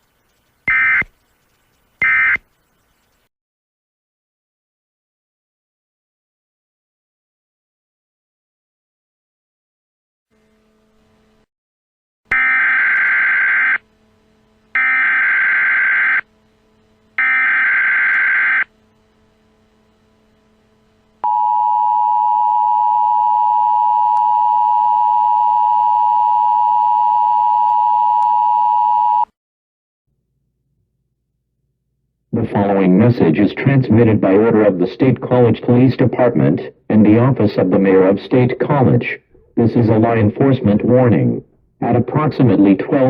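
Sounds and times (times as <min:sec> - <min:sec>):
screeching data bursts: 0:00.0 - 0:03.3, 0:14.7 - 0:16.3
two-tone attention signal: 0:02.0 - 0:02.5, 0:21.2 - 0:29.3.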